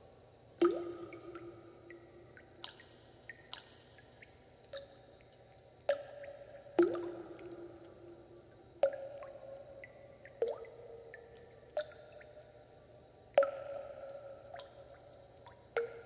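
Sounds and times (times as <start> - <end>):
water drops plinking into water: 0.6 - 8.2, 8.8 - 12.6, 13.2 - 16.0
faint ticks: 0.7 - 12.6.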